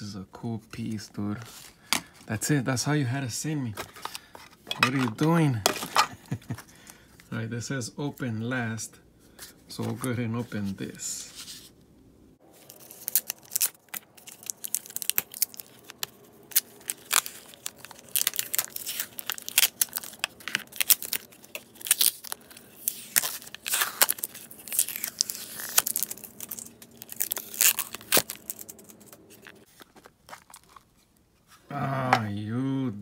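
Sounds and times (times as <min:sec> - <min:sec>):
wrapping torn and crinkled: 0:12.4 - 0:31.3.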